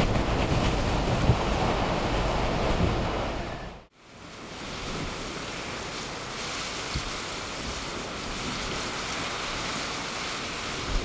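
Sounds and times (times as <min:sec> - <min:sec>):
wind buffeting microphone: 0:00.0 - 0:03.9
blizzard wind blowing: 0:00.0 - 0:11.0.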